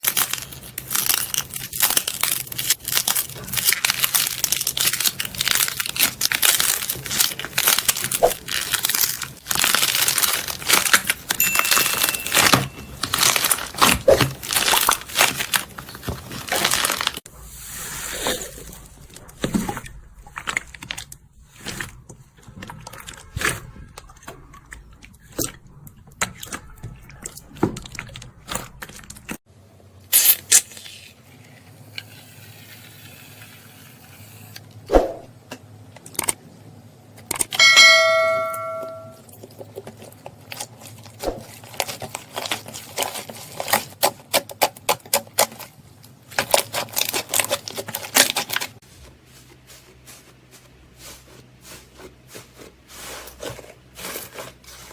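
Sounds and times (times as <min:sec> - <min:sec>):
ringing tone with overtones: 0:37.6 - 0:39.2.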